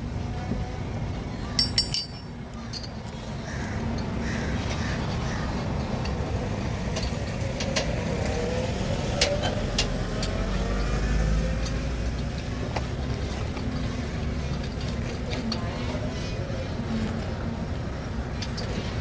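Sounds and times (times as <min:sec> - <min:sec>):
road traffic rumble: 0:00.0 - 0:19.0
metal tools clinking: 0:01.6 - 0:03.2.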